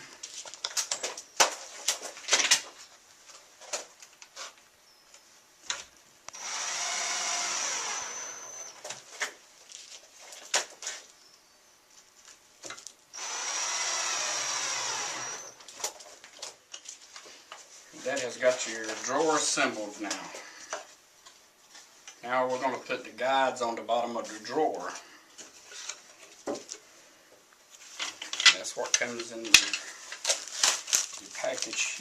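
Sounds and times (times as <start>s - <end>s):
electric drill whining: 6.3s - 8.8s, 13.1s - 15.6s.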